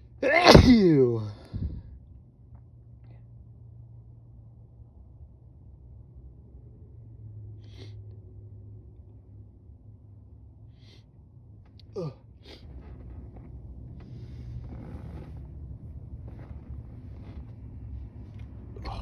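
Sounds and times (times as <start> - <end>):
person sneezing: 0.2 - 1.8.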